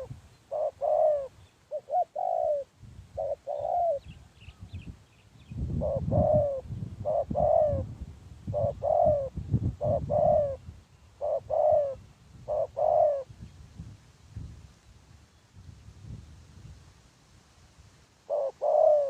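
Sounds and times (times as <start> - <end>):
dove cooing: 0.0 - 4.2, 5.7 - 7.9, 8.5 - 13.3, 18.3 - 19.0.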